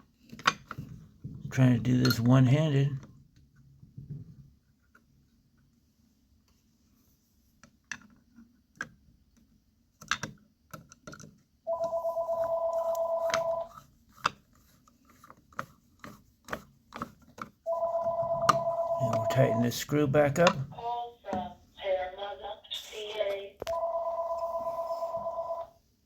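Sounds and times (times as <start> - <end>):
telephone ringing: 11.7 - 13.7, 17.7 - 19.9, 23.6 - 25.8.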